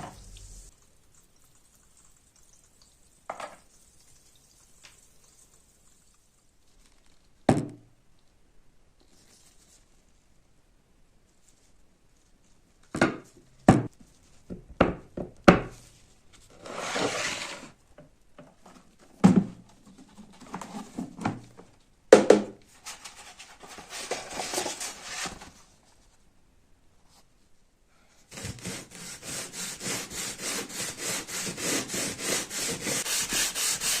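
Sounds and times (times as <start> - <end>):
scraping or rubbing: 0.0 - 0.7, 16.5 - 17.8, 28.3 - 34.0.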